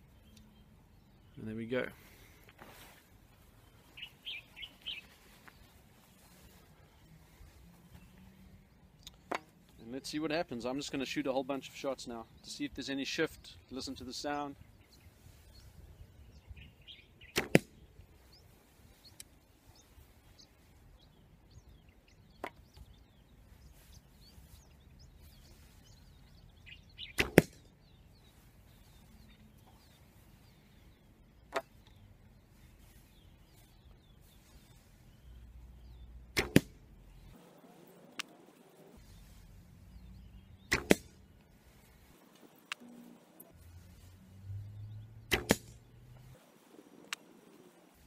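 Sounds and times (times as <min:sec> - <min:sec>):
bow string snapping: 0:09.0 - 0:09.8, 0:17.3 - 0:17.8, 0:27.1 - 0:27.7, 0:36.3 - 0:36.9, 0:40.7 - 0:41.2, 0:45.3 - 0:45.9
bow knock: 0:36.4 - 0:36.8, 0:40.7 - 0:41.1, 0:45.3 - 0:45.8.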